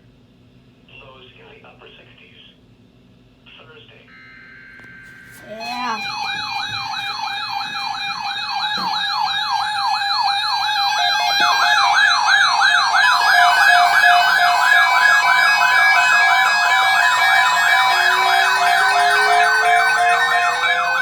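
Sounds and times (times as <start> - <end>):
second siren: 4.8 - 21.0
electronic siren yelping: 5.2 - 21.0.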